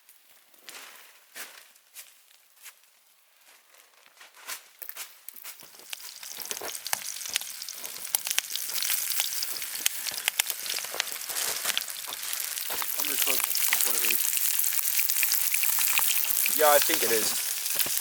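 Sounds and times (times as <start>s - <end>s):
burgers sizzling in a pan: 5.3s - 18.0s.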